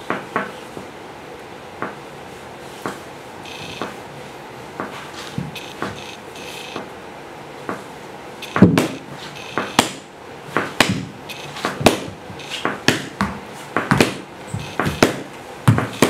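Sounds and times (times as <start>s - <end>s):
heavy thump: 8.5s - 9.0s, 10.6s - 16.0s
body slaps and knocks: 8.6s - 9.0s, 9.6s - 10.0s, 10.6s - 16.0s.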